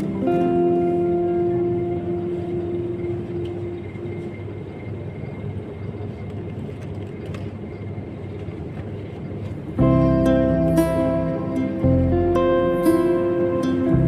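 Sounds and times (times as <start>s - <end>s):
guitar background music: 0.0s - 4.6s, 9.8s - 14.0s
faint high whine: 0.0s - 14.0s
low rumbling background noise: 0.0s - 14.0s.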